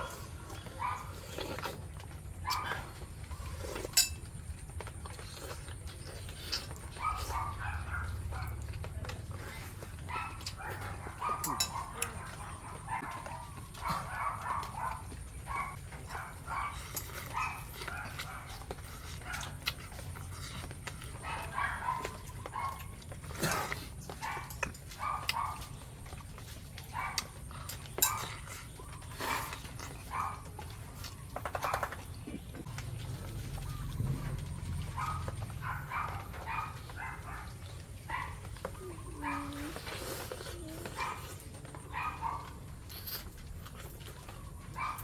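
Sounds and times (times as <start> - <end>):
dog whimpering: 38.7 - 41.2.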